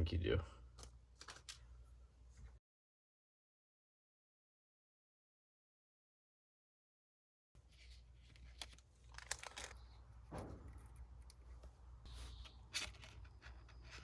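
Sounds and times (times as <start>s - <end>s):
rustling of handled materials: 7.6s - 14.0s.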